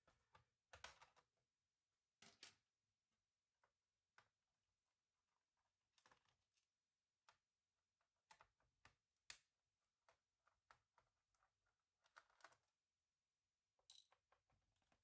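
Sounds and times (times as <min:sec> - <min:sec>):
small parts and tools clicking: 0:13.9 - 0:14.4.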